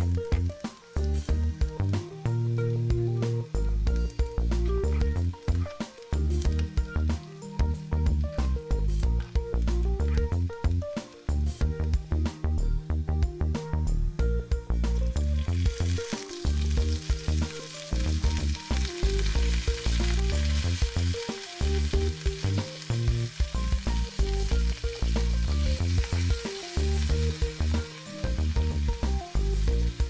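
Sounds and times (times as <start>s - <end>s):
food sizzling in a pan: 0.0s - 13.1s, 14.7s - 30.0s
music with heavy bass: 0.0s - 30.0s.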